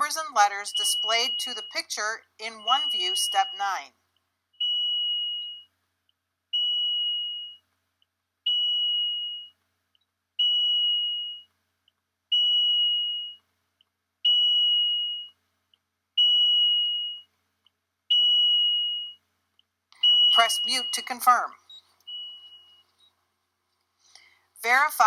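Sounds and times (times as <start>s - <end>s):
tiny electronic pip: 20.0s - 22.8s.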